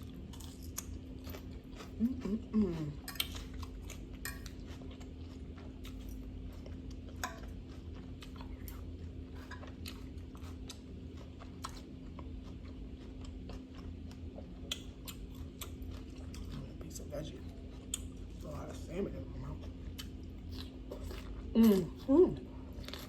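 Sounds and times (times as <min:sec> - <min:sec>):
crunchy chewing: 0:00.0 - 0:23.0
steady low hum: 0:00.0 - 0:23.0.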